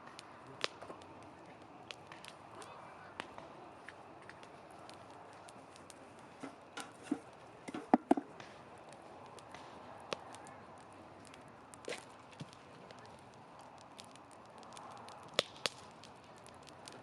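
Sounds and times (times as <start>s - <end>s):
wood fire crackling: 0.0s - 17.0s
knocks of wood: 7.1s - 8.3s.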